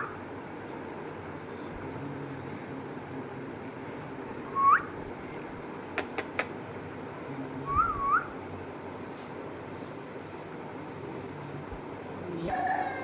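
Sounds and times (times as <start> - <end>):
parrot whistling: 4.5 - 5.0.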